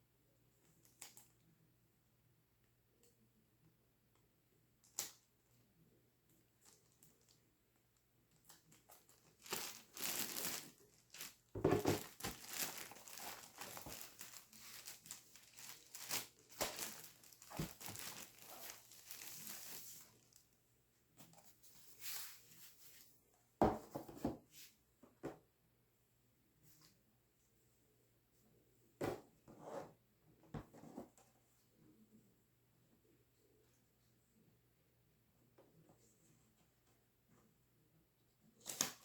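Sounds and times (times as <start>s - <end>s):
packaging crinkling and tearing: 8.6s - 20.4s.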